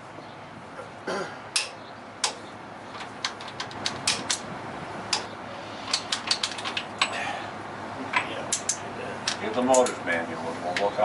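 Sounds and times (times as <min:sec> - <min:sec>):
metallic clicks of hand tools: 0:03.0 - 0:04.4.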